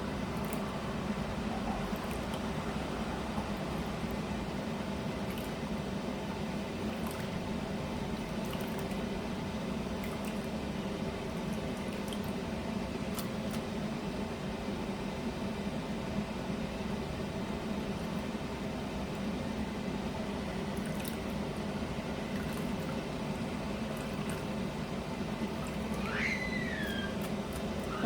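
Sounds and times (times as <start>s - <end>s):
gas burner noise: 0.0s - 11.7s.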